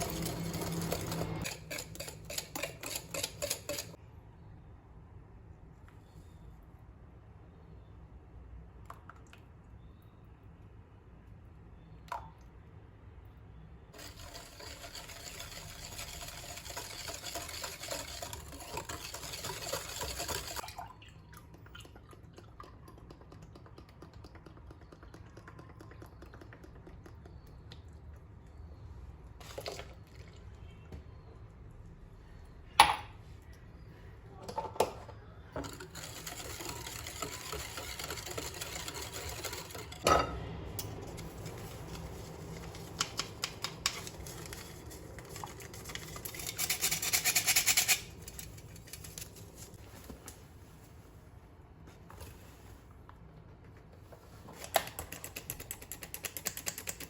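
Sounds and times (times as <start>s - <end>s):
utensils clinking: 0.0s - 4.0s
liquid pouring into a bowl: 17.8s - 27.2s.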